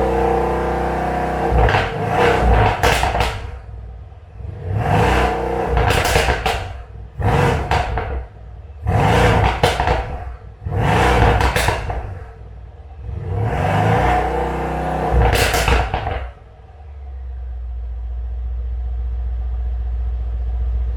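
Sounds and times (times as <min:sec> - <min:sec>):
car engine revving: 0:00.0 - 0:17.8
exhaust pops and crackles: 0:01.5 - 0:03.9, 0:05.7 - 0:12.6, 0:15.1 - 0:16.6.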